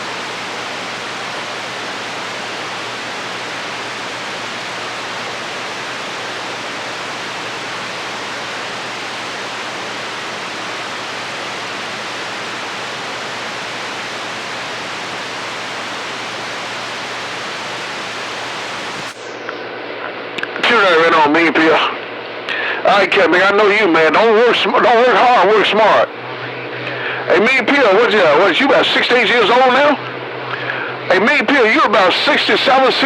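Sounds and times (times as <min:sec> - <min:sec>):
radio static hiss: 0:00.0 - 0:33.0.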